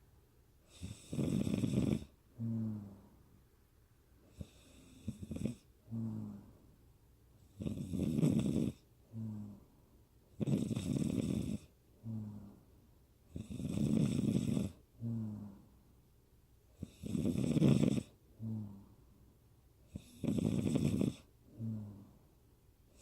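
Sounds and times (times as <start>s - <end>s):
woman snoring: 0.7s - 3.1s, 4.4s - 6.5s, 7.6s - 9.6s, 10.4s - 12.6s, 13.3s - 15.6s, 16.8s - 18.9s, 19.9s - 22.1s.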